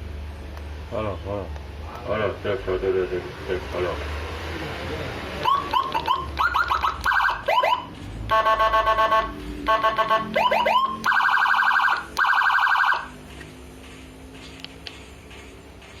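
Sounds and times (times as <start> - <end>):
electronic siren whoop chirps: 5.4 - 13.1
fast pulsing siren tone: 5.4 - 13.1.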